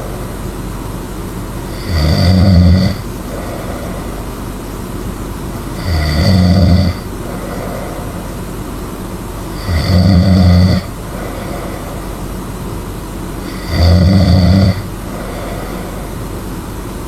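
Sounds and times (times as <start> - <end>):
person snoring loudly: 1.7 - 4.4, 5.8 - 8.4, 9.5 - 12.2, 13.4 - 16.2
soft breathing: 3.0 - 4.8, 6.9 - 8.5, 10.8 - 12.4, 14.7 - 16.4.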